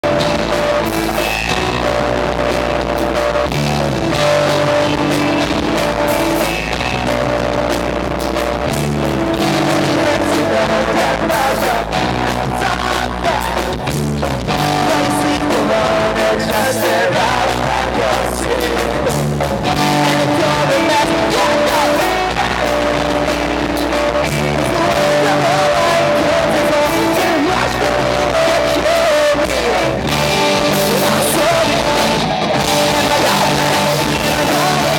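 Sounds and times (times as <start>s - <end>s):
loud electric guitars: 0.0s - 34.9s
pop-punk band playing live: 0.0s - 34.9s
lead singer singing: 8.7s - 34.9s.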